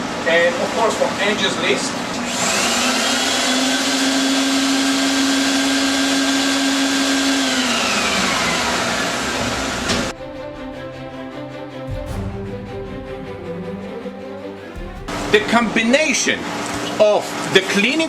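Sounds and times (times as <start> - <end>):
music: 10.1 - 18.0.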